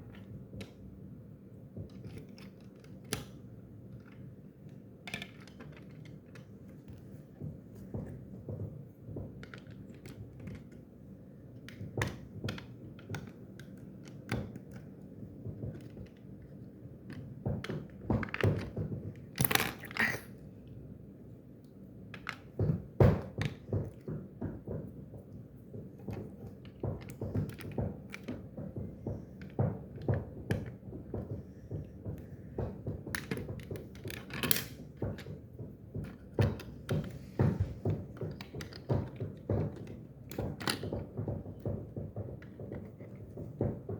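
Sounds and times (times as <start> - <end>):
plastic toy pieces knocking: 11.6 - 20.2, 22.2 - 43.9.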